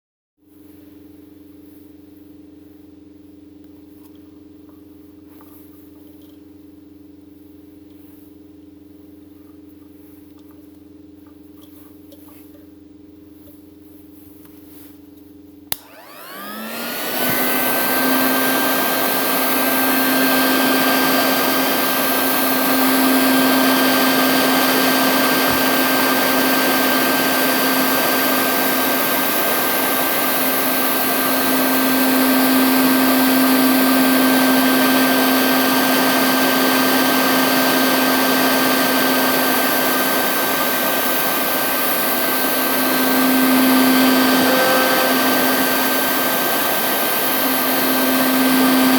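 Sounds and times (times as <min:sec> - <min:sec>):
tool switch click: 0:15.7 - 0:16.0
electric motor tool running: 0:15.7 - 0:48.9.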